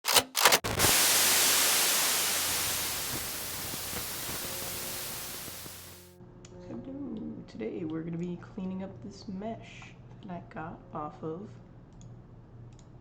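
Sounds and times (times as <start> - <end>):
static crackles: 0.6 - 6.1
static hiss: 0.7 - 6.1.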